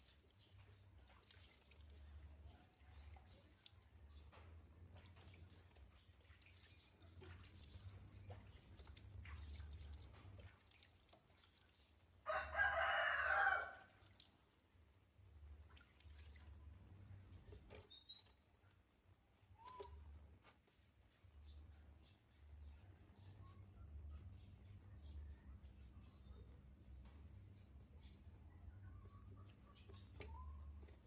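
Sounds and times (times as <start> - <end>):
rooster crowing: 12.3 - 13.9.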